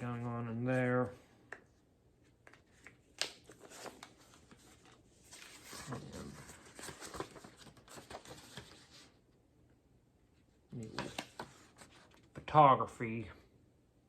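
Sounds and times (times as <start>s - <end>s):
paper rustling: 2.4s - 9.2s, 10.8s - 12.4s.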